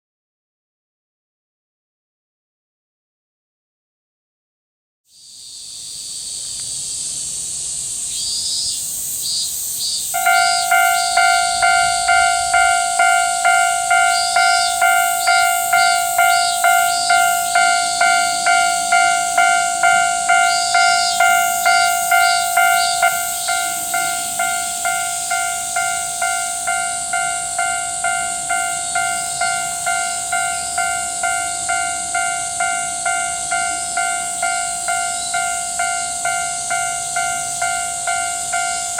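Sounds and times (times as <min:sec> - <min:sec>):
steady high hiss: 0:05.1 - 0:38.9
railroad crossing bell ringing: 0:10.1 - 0:38.9.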